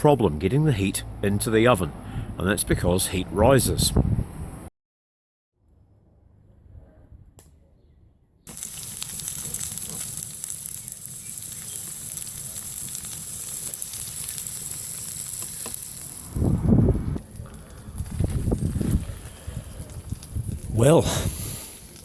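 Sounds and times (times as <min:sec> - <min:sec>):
food sizzling in a pan: 0:08.5 - 0:16.5
low rumble: 0:16.2 - 0:20.8.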